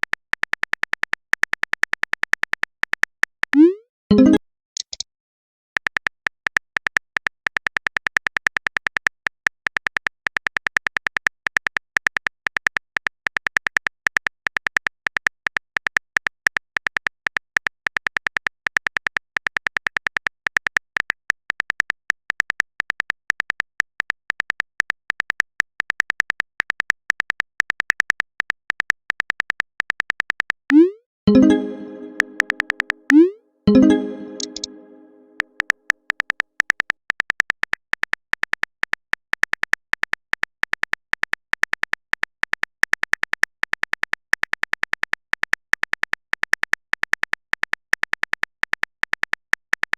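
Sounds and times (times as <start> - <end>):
keyboard typing clicks: 30.7 - 35.8.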